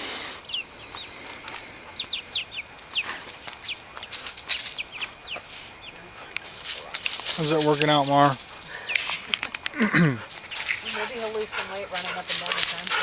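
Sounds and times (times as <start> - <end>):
young chickens peeping: 0.0 - 13.0
scratchy rustles: 2.8 - 9.3, 10.3 - 13.0.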